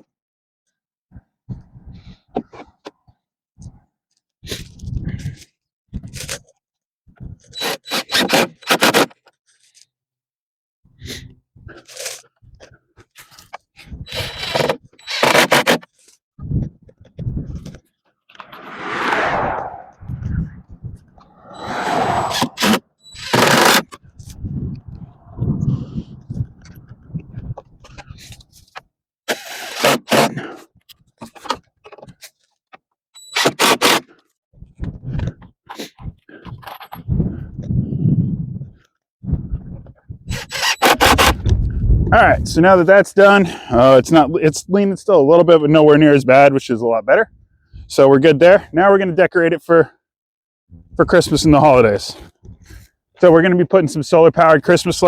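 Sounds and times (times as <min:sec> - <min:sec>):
noisy scraping strokes: 0:18.4 - 0:20.4, 0:21.1 - 0:26.6.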